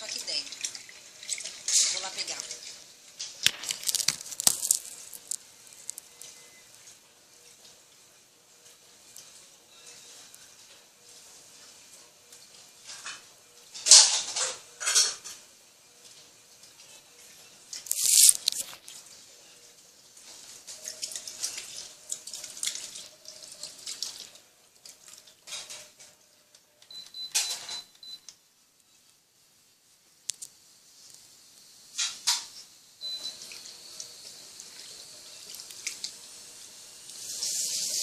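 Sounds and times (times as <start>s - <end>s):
water splashing in washing machine: 0.0s - 3.1s, 20.4s - 25.8s.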